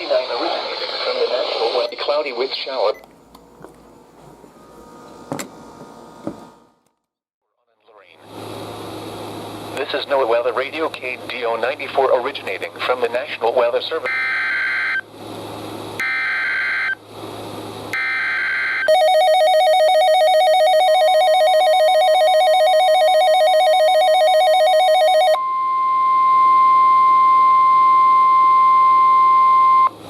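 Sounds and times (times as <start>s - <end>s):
steady high alarm tone: 18.0s - 29.9s.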